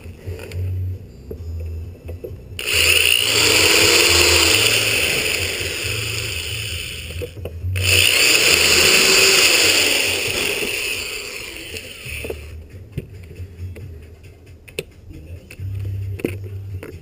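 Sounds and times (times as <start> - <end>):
electric drill drilling: 2.6 - 12.5.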